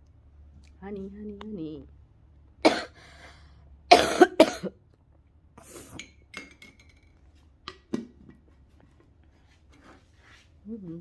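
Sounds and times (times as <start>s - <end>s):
woman coughing: 2.6s - 3.0s, 3.9s - 4.8s.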